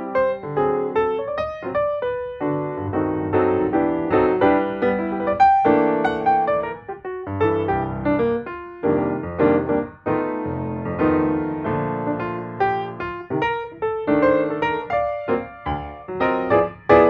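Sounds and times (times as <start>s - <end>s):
piano melody: 0.0s - 17.0s.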